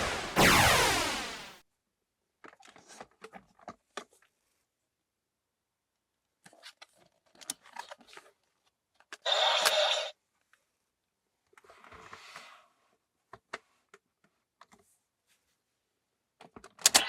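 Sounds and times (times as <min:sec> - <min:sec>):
scratchy burst: 0:00.0 - 0:01.6.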